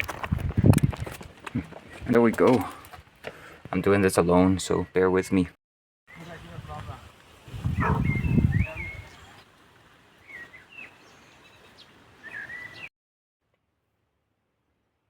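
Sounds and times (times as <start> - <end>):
handling rumble and rustling: 0.0 - 3.2
small birds chirping: 7.5 - 12.9.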